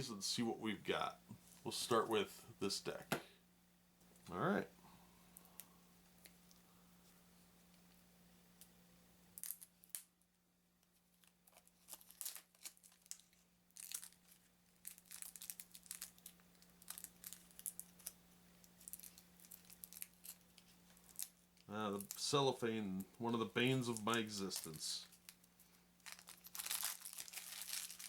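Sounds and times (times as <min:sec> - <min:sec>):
faint electrical hum: 0:00.0 - 0:28.0
cellophane crinkling: 0:09.4 - 0:10.0, 0:11.0 - 0:28.0.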